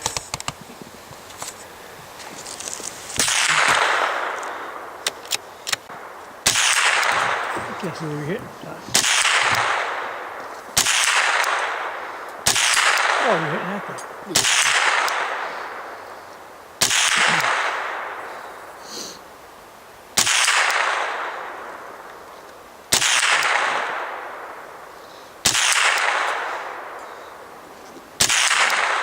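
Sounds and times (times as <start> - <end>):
gunshots with echo: 3.2 - 5.0, 5.8 - 16.2, 16.8 - 18.6, 20.2 - 22.0, 22.9 - 24.8, 25.4 - 27.0, 28.2 - 29.0.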